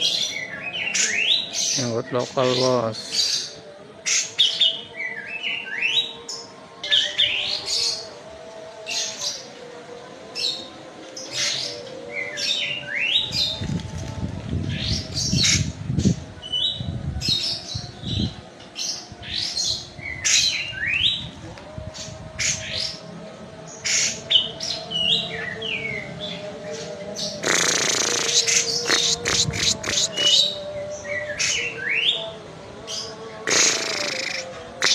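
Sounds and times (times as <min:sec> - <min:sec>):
songbird chirping and whistling: 0:23.9 - 0:32.2, 0:33.0 - 0:34.9.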